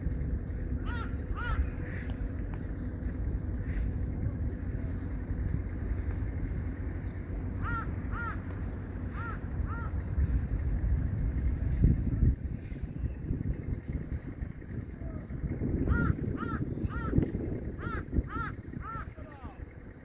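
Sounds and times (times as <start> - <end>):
wind rumbling on microphone: 0.0 - 20.0
bird calls: 0.8 - 2.6, 7.0 - 10.4, 15.8 - 19.9.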